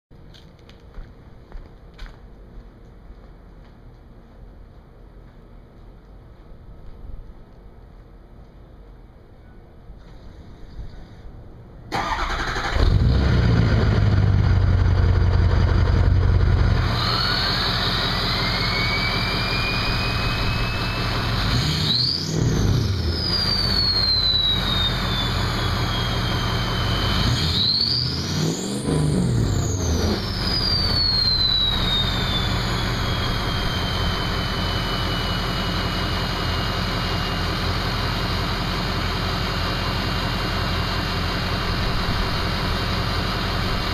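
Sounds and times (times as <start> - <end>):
diesel engine starting and revving: 11.9 - 43.9
turbo whistle: 16.8 - 36.9.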